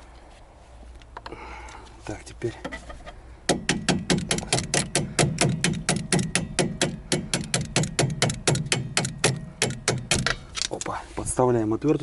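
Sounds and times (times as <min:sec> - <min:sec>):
hand ratchet clicking: 0:03.6 - 0:10.7.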